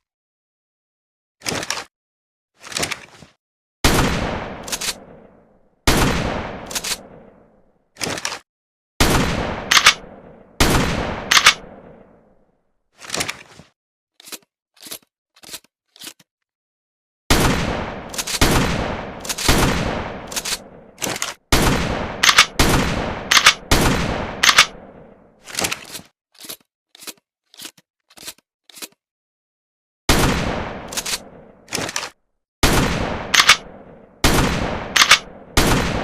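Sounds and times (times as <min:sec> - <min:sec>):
shotgun blasts echoing: 0:03.8 - 0:07.4, 0:09.0 - 0:12.1, 0:17.3 - 0:25.2, 0:30.1 - 0:31.5, 0:32.6 - 0:36.0
short metallic clicks: 0:09.7 - 0:10.0, 0:11.3 - 0:11.6, 0:33.3 - 0:33.6, 0:35.0 - 0:35.3
shotgun pump racking clack: 0:09.7 - 0:10.0, 0:11.3 - 0:11.6, 0:22.2 - 0:22.5, 0:24.4 - 0:24.7, 0:33.3 - 0:33.6, 0:35.0 - 0:35.2.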